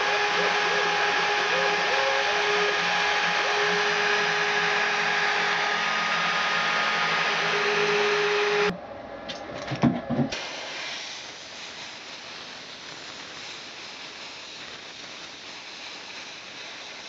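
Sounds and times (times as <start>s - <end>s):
milling machine spindle whine: 0.0s - 8.7s.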